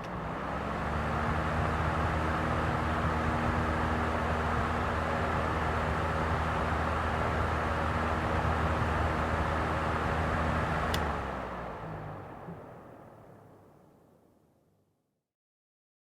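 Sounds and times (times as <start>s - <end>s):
electric fan running: 0.0s - 12.8s
fan switch click: 10.9s - 11.2s.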